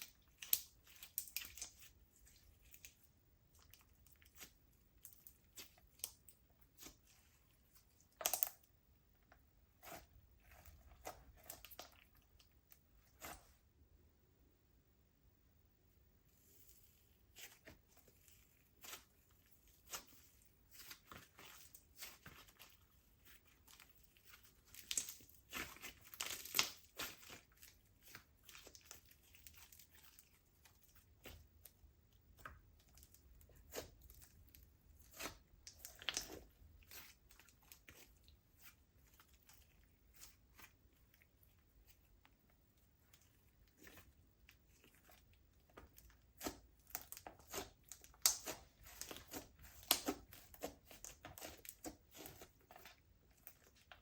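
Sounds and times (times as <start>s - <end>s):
slime squished by hand: 16.4s - 42.2s, 42.9s - 54.0s.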